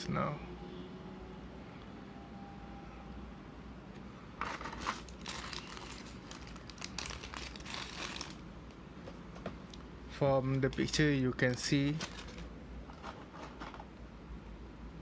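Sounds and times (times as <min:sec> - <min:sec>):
plastic packaging crinkling: 0:04.4 - 0:08.4, 0:10.6 - 0:13.9.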